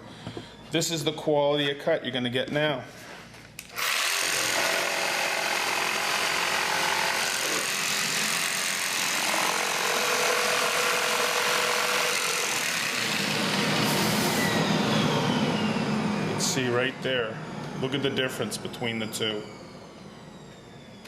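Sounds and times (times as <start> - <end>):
jigsaw running: 3.7 - 16.3.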